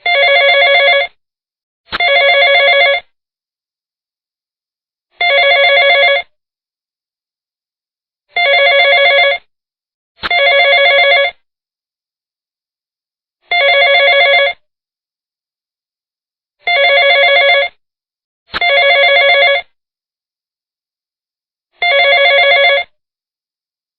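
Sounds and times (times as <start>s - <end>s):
electronic telephone ringing: 0.0s - 1.2s, 2.0s - 3.1s, 5.2s - 6.3s, 8.4s - 9.5s, 10.2s - 11.4s, 13.5s - 14.6s, 16.6s - 17.8s, 18.6s - 19.8s, 21.8s - 22.9s.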